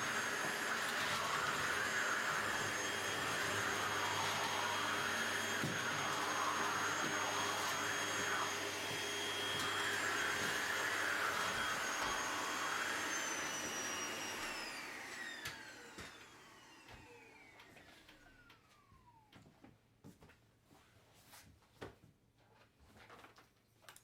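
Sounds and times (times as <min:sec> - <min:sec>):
vacuum cleaner running: 0:00.0 - 0:19.3.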